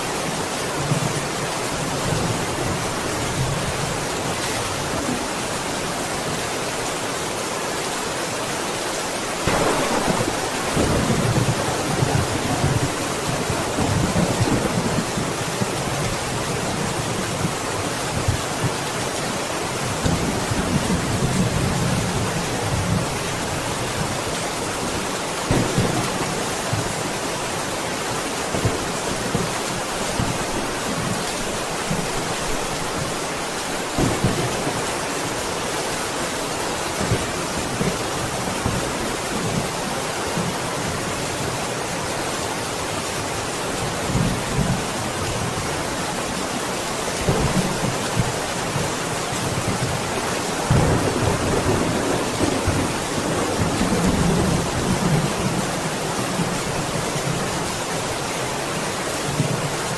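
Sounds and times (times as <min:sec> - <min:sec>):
heavy rain: 0:00.0 - 0:59.9
thunder rumbles: 0:09.4 - 0:18.8, 0:25.5 - 0:27.1, 0:33.8 - 0:35.4.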